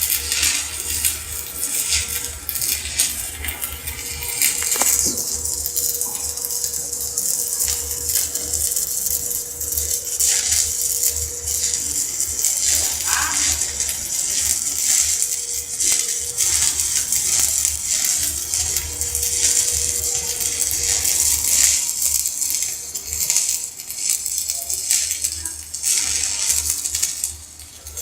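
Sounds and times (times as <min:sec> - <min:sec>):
arc welding crackling sizzle: 0:00.0 - 0:28.0.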